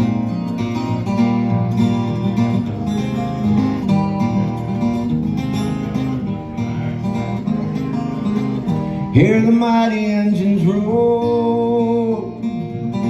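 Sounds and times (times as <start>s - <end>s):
acoustic guitar picked and strummed: 0.0s - 13.0s.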